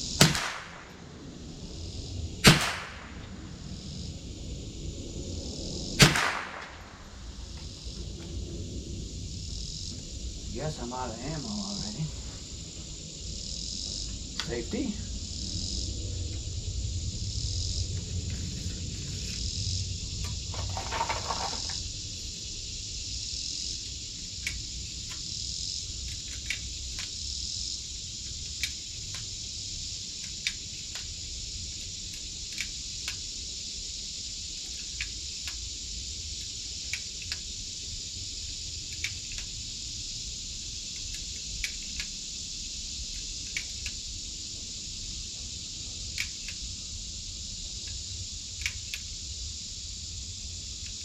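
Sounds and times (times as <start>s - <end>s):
insects chirring: 0.0s - 51.0s
sharp light clicks: 0.2s - 1.0s, 2.4s - 3.4s, 6.0s - 7.7s, 14.0s - 14.8s, 24.2s - 25.3s, 26.0s - 27.3s, 28.2s - 29.4s, 30.2s - 33.4s, 34.6s - 37.6s, 38.2s - 39.8s, 40.9s - 42.3s, 43.0s - 44.1s, 46.0s - 46.8s, 47.7s - 49.2s, 50.7s - 51.0s.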